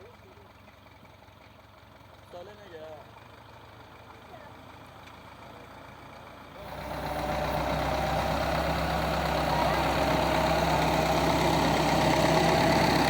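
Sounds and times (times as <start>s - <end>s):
harvester engine running: 5.8s - 13.0s.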